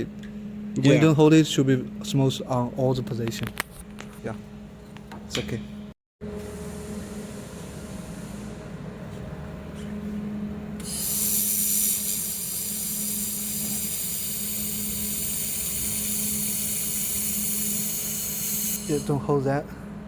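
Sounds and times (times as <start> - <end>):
laser welder hiss and whine: 10.8 - 19.3.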